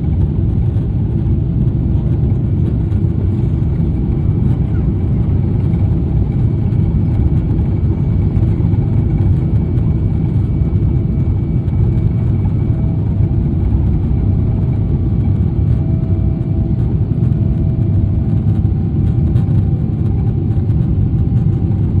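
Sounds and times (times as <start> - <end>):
faint steady whines: 0.0 - 22.0
jet engine cabin rumble: 0.0 - 22.0.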